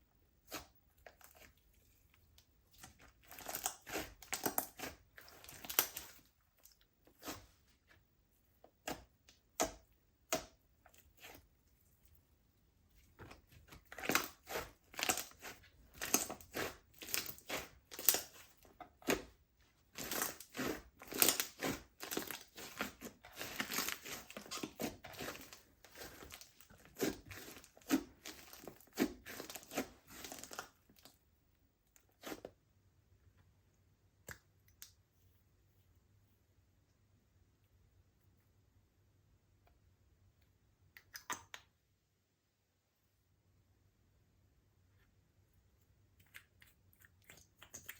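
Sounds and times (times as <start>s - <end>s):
slime squished by hand: 2.7s - 7.5s, 13.1s - 31.1s.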